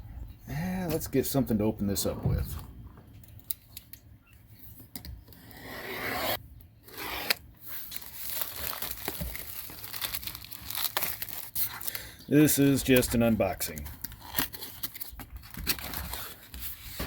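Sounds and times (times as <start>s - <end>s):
packaging being cut and torn: 5.8s - 11.9s, 13.9s - 16.5s
packaging rustling: 7.3s - 17.0s.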